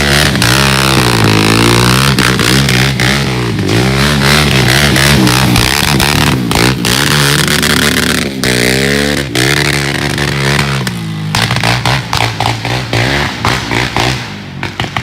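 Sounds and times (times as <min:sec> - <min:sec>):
quad engine revving: 0:00.0 - 0:15.0
exhaust pops and bangs: 0:09.3 - 0:15.0.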